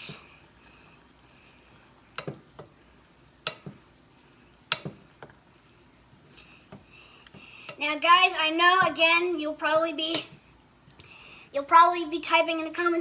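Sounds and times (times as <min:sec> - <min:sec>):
utensil clicking against pan: 0:02.1 - 0:02.7, 0:03.4 - 0:03.8, 0:04.7 - 0:05.4.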